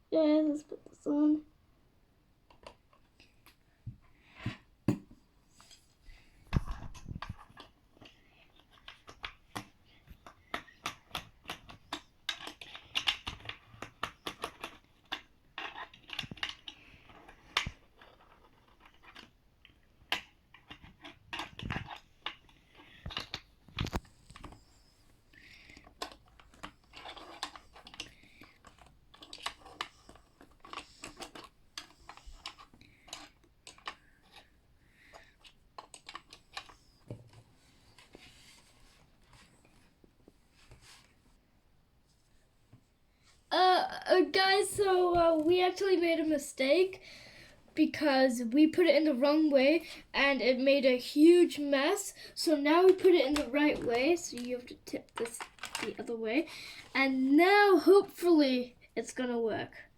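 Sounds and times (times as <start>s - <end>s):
plastic parts clicking and scraping: 2.5s - 3.6s, 5.6s - 39.9s, 51.5s - 58.1s.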